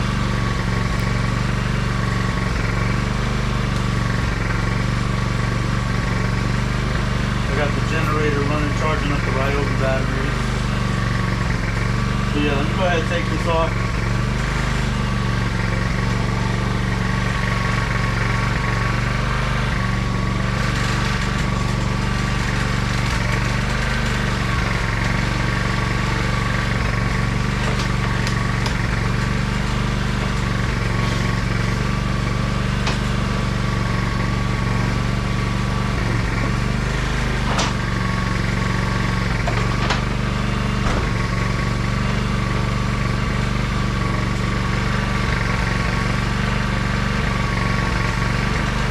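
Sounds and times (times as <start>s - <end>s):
generator engine running: 0.0s - 48.9s.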